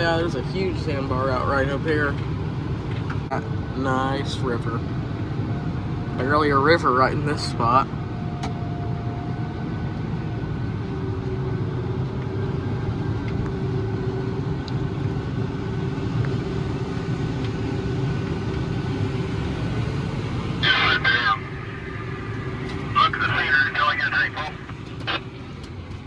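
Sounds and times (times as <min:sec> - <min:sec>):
tractor engine running: 0:09.9 - 0:26.0
thin steady whine: 0:16.2 - 0:26.0.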